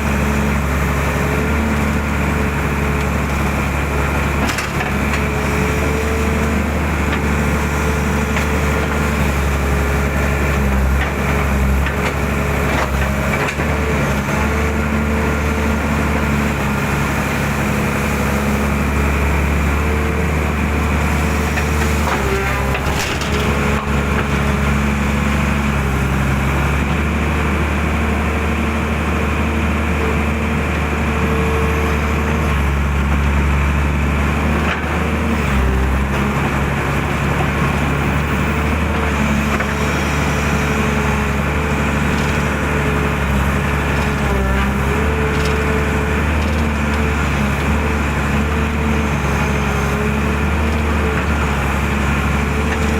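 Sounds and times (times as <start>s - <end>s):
excavator diesel engine running: 0.0s - 52.9s
sharp knocks and cracks: 21.6s - 23.9s.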